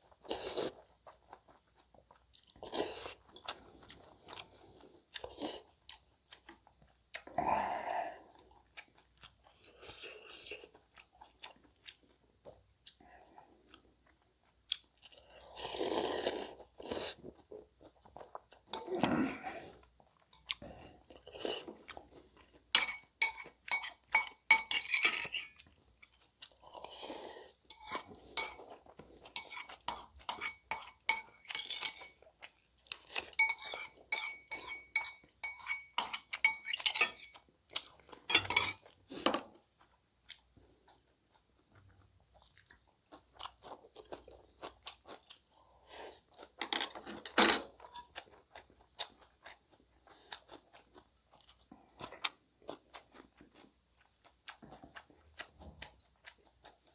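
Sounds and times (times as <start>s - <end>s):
close chewing: 0.0s - 18.9s, 19.5s - 56.9s
utensils clinking against a bowl: 22.8s - 25.6s, 27.7s - 32.2s, 33.0s - 37.4s, 38.2s - 39.4s.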